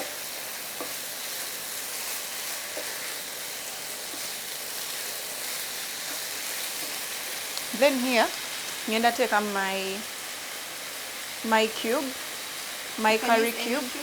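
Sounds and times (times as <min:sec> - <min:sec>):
meat sizzling in a frying pan: 0:00.0 - 0:14.0.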